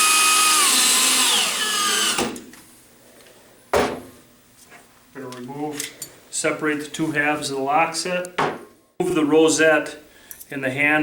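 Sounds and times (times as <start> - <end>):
power drill driving screws: 0.0 - 2.5.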